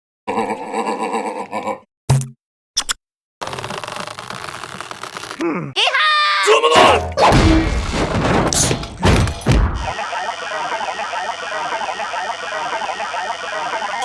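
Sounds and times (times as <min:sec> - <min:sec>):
dense clattering: 0:06.8 - 0:09.9
cartoon crashes and thuds: 0:06.8 - 0:10.0.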